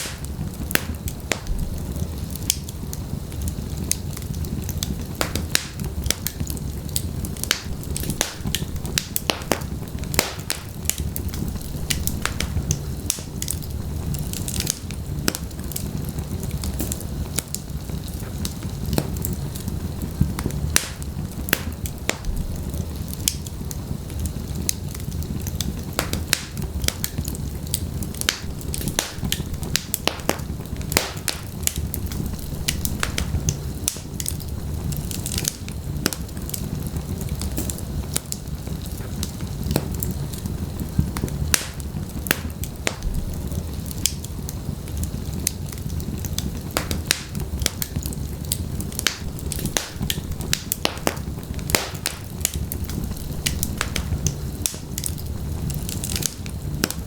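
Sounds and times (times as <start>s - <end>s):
fire crackles and pops: 0.0s - 57.0s
fire flames rumbling: 0.0s - 57.0s.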